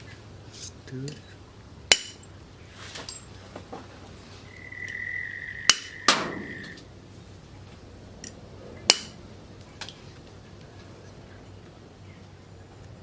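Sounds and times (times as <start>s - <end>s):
sharp metallic knocks: 1.2s - 2.4s, 5.6s - 6.8s, 8.9s - 9.2s
steady high whine: 4.0s - 13.0s.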